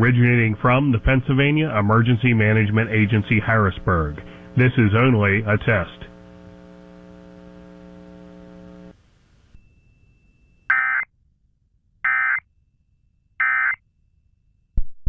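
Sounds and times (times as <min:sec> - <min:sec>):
low electrical buzz: 0:00.0 - 0:11.0
alert data tone bursts: 0:10.7 - 0:11.0.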